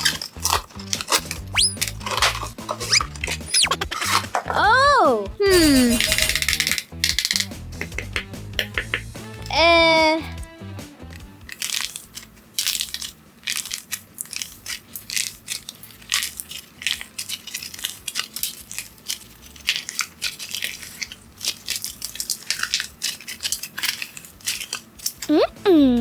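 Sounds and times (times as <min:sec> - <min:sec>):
paper crumpling: 0:00.0 - 0:04.5, 0:11.4 - 0:25.3.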